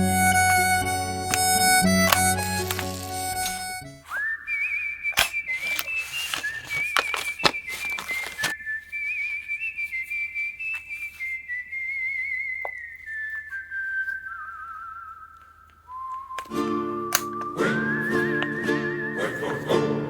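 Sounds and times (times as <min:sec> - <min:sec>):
warbling whistled tone: 0:00.0 - 0:19.8
cap gun cracks: 0:01.3 - 0:03.6, 0:05.2 - 0:06.0, 0:17.1 - 0:17.5.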